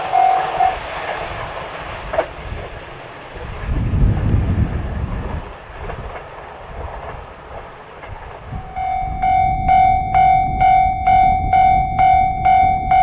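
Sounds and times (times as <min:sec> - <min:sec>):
level-crossing warning bell: 0:00.0 - 0:01.5, 0:08.2 - 0:13.0
train rumbling past: 0:00.0 - 0:13.0.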